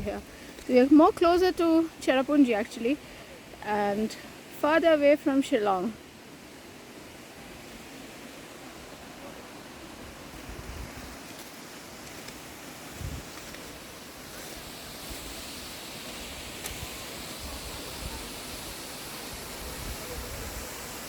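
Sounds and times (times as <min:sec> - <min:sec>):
distant waterfall: 0:00.0 - 0:21.0
wind: 0:00.0 - 0:21.0
wind buffeting microphone: 0:10.0 - 0:11.2, 0:12.9 - 0:13.4.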